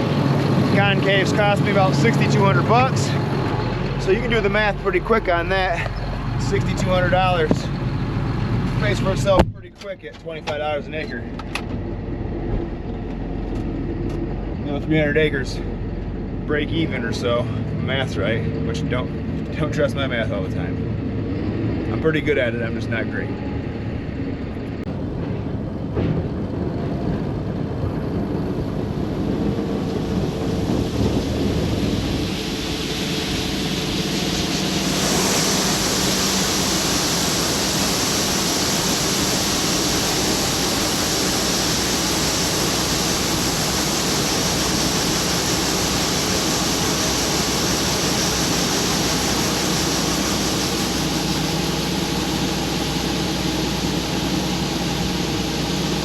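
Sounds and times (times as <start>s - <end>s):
machinery hiss: 0.0s - 7.7s, 28.5s - 56.0s
combine harvester engine drone: 0.0s - 56.0s.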